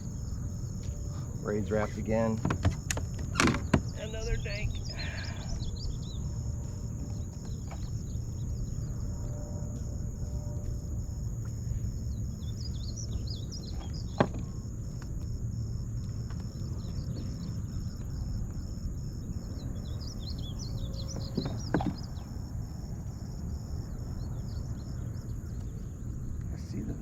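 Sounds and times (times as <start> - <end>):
birds chirping: 0.0 - 27.0
low rumble of wind and water: 0.0 - 27.0
steady high drone: 4.0 - 13.8.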